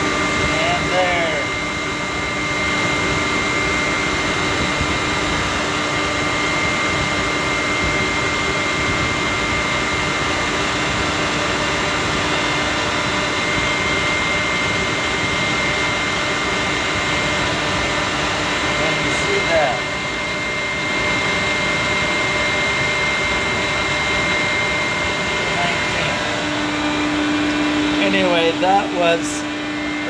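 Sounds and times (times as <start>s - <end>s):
compressor droning: 0.0s - 30.0s
whining tones: 13.2s - 30.0s.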